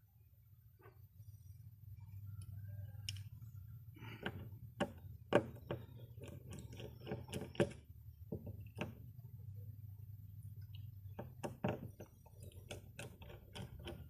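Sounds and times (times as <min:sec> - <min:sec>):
sharp clicks and knocks: 0:04.0 - 0:09.2, 0:10.6 - 0:14.0.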